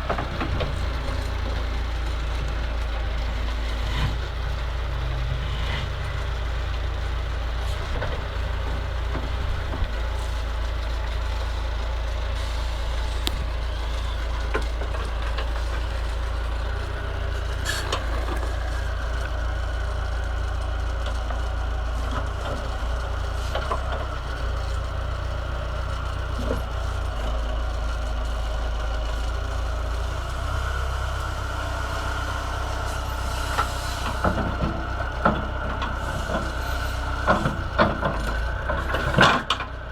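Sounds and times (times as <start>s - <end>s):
diesel engine running: 0.0s - 39.9s
sharp knocks and clanks: 33.6s - 39.7s.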